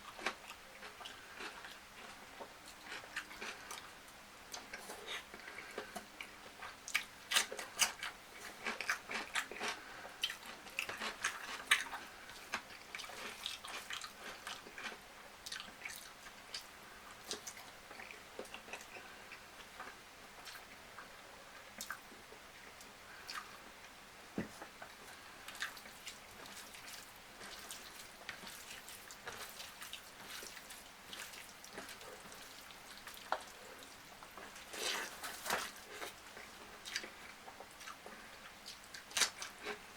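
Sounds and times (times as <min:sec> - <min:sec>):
wet chewing and smacking: 0:00.1 - 0:03.9, 0:04.5 - 0:21.1, 0:21.8 - 0:39.9.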